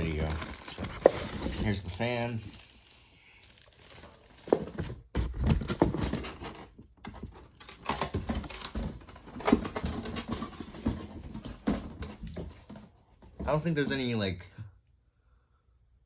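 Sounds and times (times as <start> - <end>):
packaging rustling and crinkling: 0.0 - 12.7.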